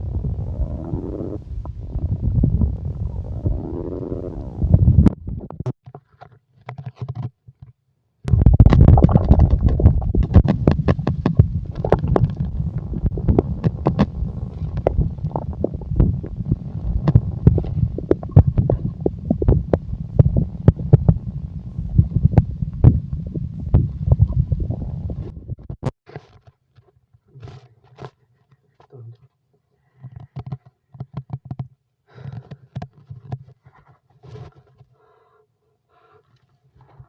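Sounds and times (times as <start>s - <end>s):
stomach growling: 0.0s - 6.3s, 8.3s - 25.9s.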